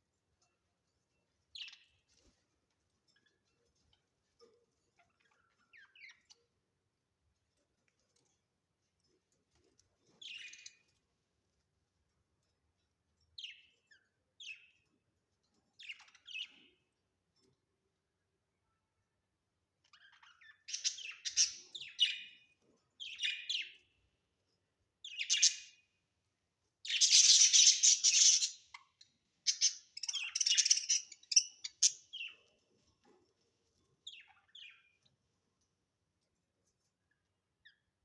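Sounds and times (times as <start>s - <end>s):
budgerigars chirping and chattering: 10.2s - 10.8s, 15.8s - 16.7s, 19.8s - 23.9s, 25.1s - 25.8s, 26.8s - 32.5s, 34.1s - 35.0s.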